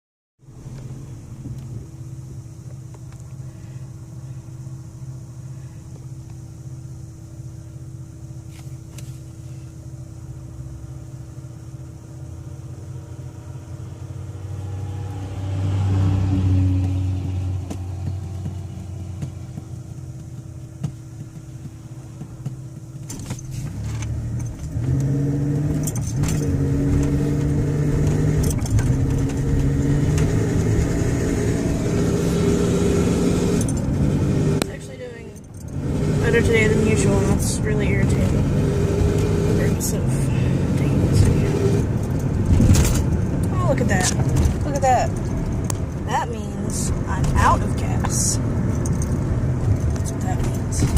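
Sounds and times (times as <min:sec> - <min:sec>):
misfiring car engine revving: 0:12.6 - 0:50.9.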